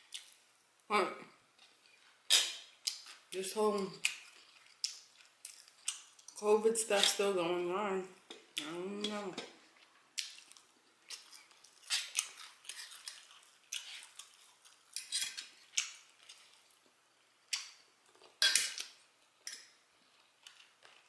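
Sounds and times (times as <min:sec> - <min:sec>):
wet chewing and lip smacking: 0:04.0 - 0:06.4, 0:09.8 - 0:16.9.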